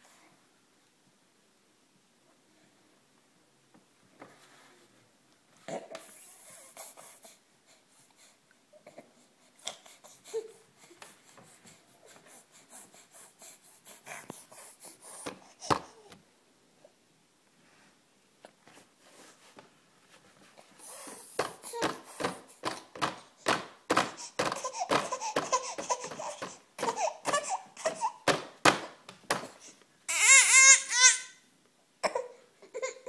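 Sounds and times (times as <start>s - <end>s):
baby laughing and babbling: 21.0s - 22.6s, 24.0s - 28.3s, 32.0s - 33.0s
baby squealing: 24.5s - 28.2s, 30.1s - 31.4s.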